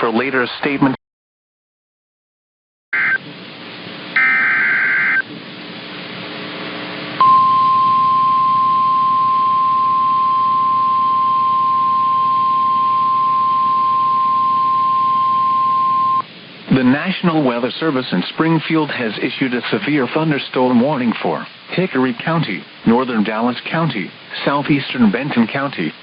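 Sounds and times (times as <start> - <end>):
radio hiss: 0.0 - 1.0, 16.0 - 26.0
data tone bursts: 4.2 - 5.2, 7.2 - 16.2
steady high alarm tone: 4.2 - 5.2, 7.2 - 16.2.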